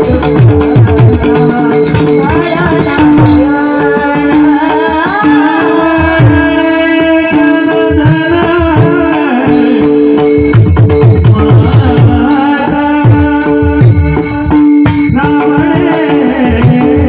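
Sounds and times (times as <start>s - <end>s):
woman singing: 0.0s - 10.2s, 11.2s - 17.0s
hand drum: 0.0s - 17.0s.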